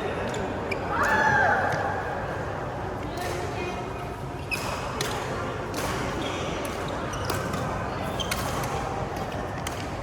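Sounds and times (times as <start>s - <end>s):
shoe squeaks on court floor: 6.2s - 8.6s.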